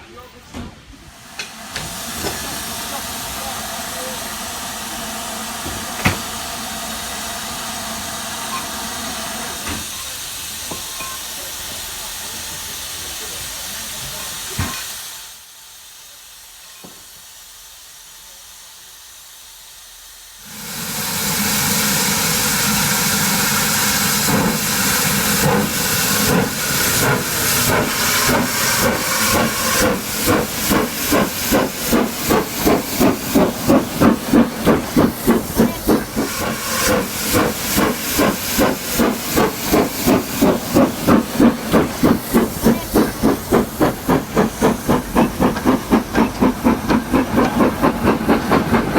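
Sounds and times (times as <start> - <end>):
steam hiss from speaker: 1.0 - 48.9
locomotive exhaust chuffs: 20.4 - 48.9.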